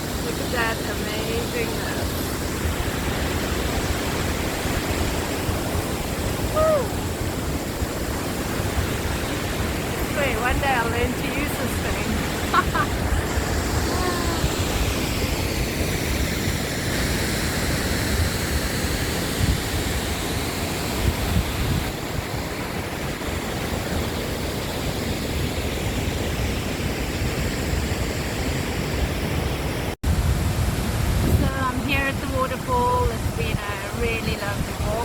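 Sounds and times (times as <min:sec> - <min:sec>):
waterfall rushing: 0:00.0 - 0:21.0.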